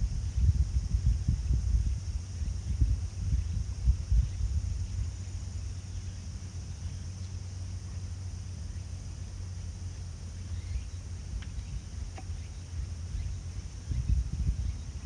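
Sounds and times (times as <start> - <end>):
wind buffeting microphone: 0.0 - 6.3, 10.6 - 15.0.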